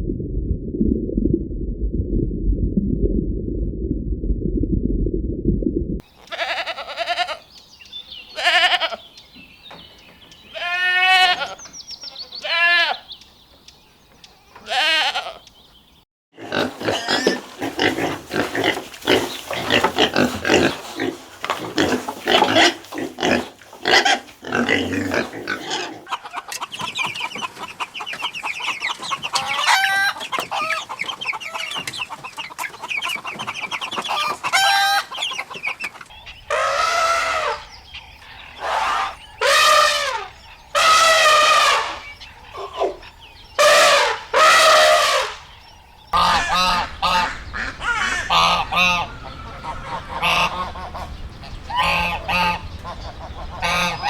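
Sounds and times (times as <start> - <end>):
goats bleating: 6.2 - 7.4, 8.4 - 9.0, 10.5 - 11.6, 12.3 - 13.0, 14.6 - 15.4
chickens clucking: 16.6 - 54.0.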